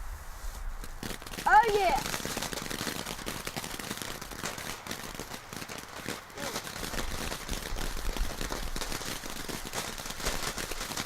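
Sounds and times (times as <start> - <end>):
firework hissing and crackling: 0.0 - 11.0.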